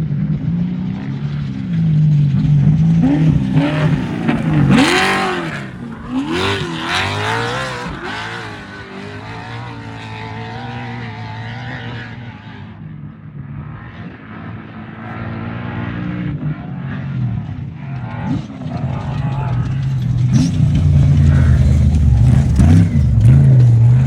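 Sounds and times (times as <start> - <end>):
truck engine revving hard: 2.3 - 12.5, 15.2 - 24.0.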